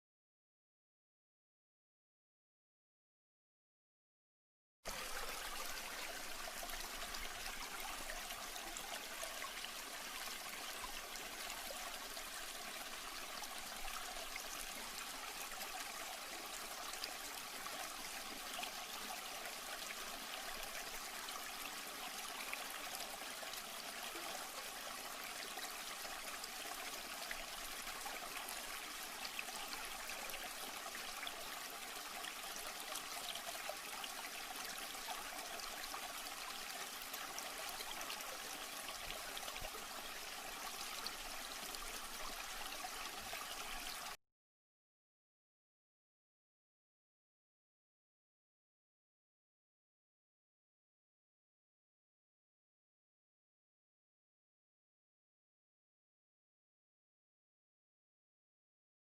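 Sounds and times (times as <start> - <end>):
running water trickling: 4.9 - 44.2.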